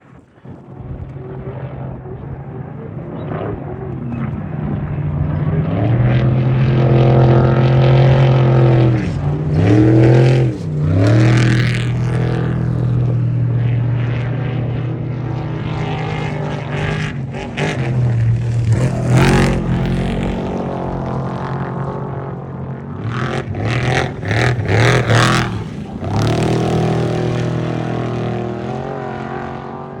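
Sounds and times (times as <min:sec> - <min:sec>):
rush of noise: 0:00.0 - 0:30.0
truck engine revving: 0:05.4 - 0:14.0, 0:15.8 - 0:22.4, 0:23.0 - 0:29.8.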